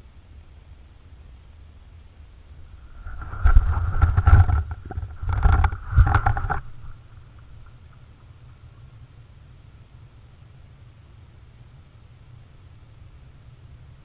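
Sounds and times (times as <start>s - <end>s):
owl scraping and bumping in nest box: 2.8s - 7.2s.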